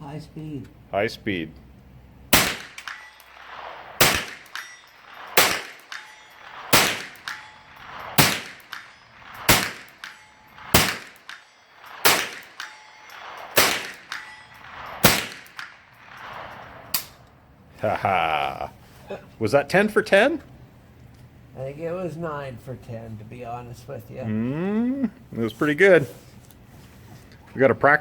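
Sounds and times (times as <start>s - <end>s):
rifle shots: 2.3s - 17.3s
steel gong target ringing: 2.4s - 16.8s.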